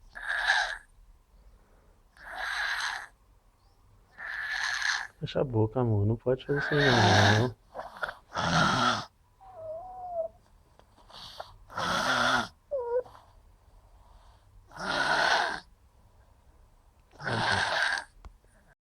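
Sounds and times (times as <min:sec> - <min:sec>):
person snoring loudly: 0:06.7 - 0:07.6, 0:08.3 - 0:10.3, 0:11.7 - 0:13.0, 0:14.7 - 0:15.7, 0:17.2 - 0:18.2.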